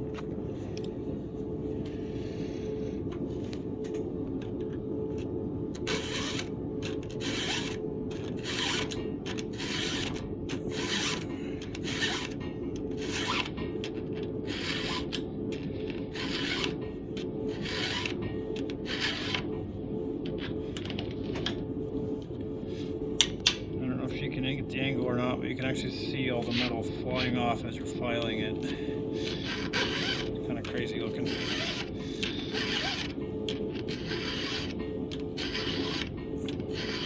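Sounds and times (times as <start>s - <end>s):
steady low hum: 0.0s - 37.0s
file rasping on chainsaw chain: 31.2s - 33.1s.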